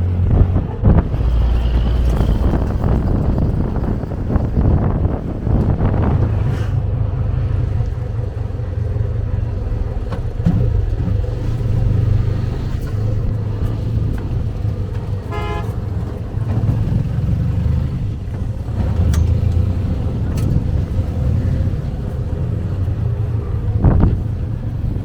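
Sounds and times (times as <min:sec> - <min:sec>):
vehicle engine running: 0:00.0 - 0:25.0
short horn toot: 0:15.3 - 0:15.8.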